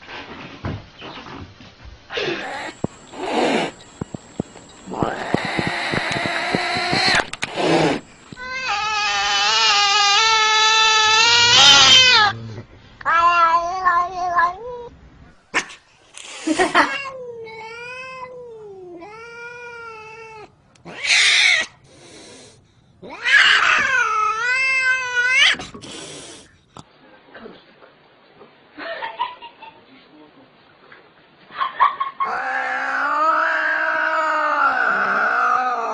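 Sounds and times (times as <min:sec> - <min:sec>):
cat yowling: 0:02.2 - 0:07.3, 0:08.4 - 0:12.4, 0:16.8 - 0:21.8, 0:23.0 - 0:25.6
harsh noisy bursts: 0:02.2 - 0:08.9.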